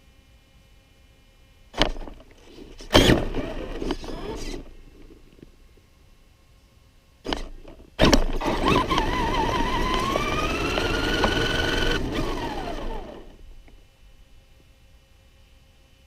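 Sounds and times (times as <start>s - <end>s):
toy truck motor whine: 2.9s - 4.7s, 7.3s - 13.5s.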